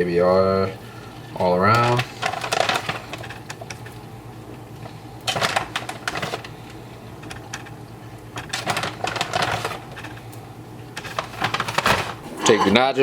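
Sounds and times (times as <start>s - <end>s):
tortilla chips crackling: 1.7s - 12.3s.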